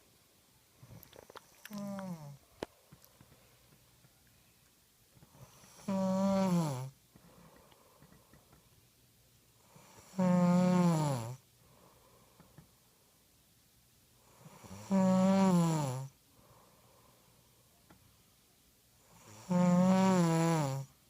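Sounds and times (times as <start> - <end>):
person snoring: 1.7 - 2.4, 5.4 - 6.9, 9.9 - 11.4, 14.4 - 16.2, 19.2 - 20.9.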